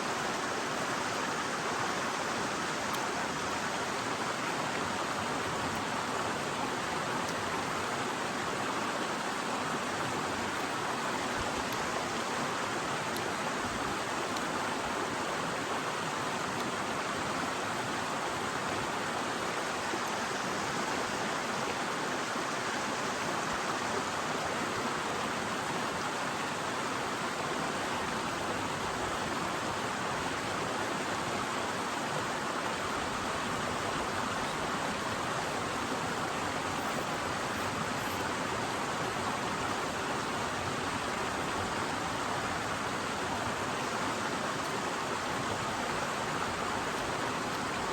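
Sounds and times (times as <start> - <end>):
river rushing over rocks: 0.0 - 47.9.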